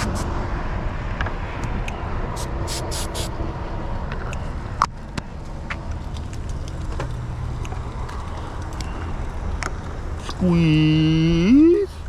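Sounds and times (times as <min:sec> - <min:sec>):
cooking spray hissing: 0:02.4 - 0:03.3.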